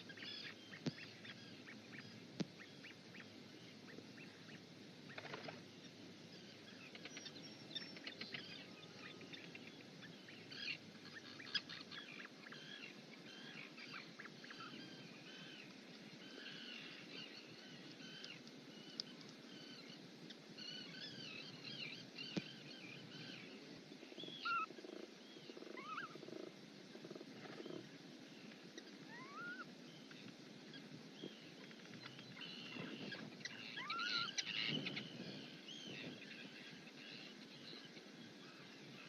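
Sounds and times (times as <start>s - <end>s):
low growling bird calls: 24.2s - 28.0s, 29.0s - 29.7s, 31.6s - 39.0s.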